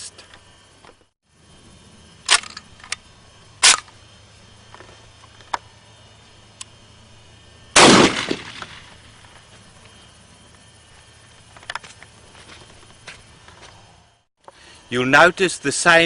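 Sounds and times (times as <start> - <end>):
shotgun reports: 7.8 - 8.8.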